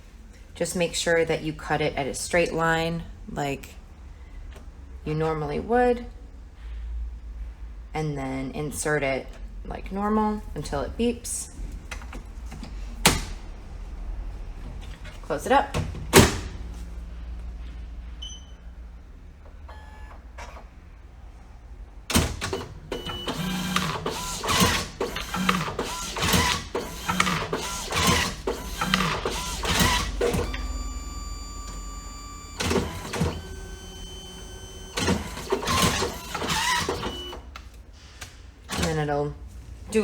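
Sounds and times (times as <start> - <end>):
printer mechanism clicking and clunking: 22.1 - 37.6
printer motors whirring: 22.1 - 37.6.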